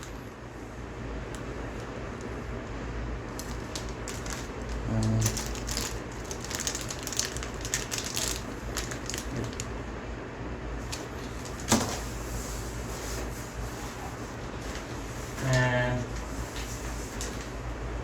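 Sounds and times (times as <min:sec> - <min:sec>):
low steady hum: 0:00.0 - 0:18.0
packaging rustles and clicks: 0:03.3 - 0:09.7, 0:10.8 - 0:12.1.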